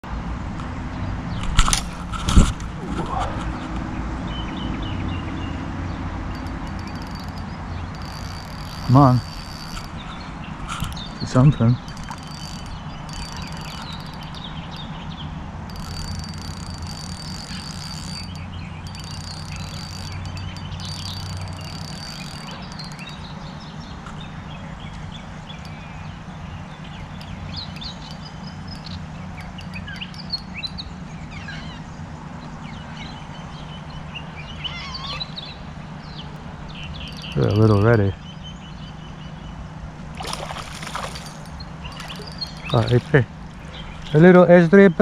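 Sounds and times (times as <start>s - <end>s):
low background hum: 0.1s - 45.0s
small birds chirping: 3.2s - 45.0s
thin high steady tone: 5.4s - 31.7s, 36.0s - 38.9s, 40.2s - 45.0s.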